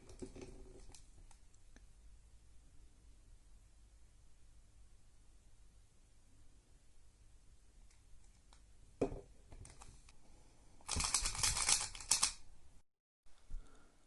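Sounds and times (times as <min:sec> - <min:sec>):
puzzle cube plastic clicking: 0:10.9 - 0:12.4.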